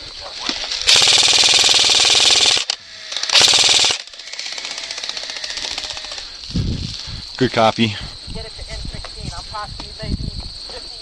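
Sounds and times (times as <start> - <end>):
airsoft gun full-auto bursts: 0.9 - 6.2.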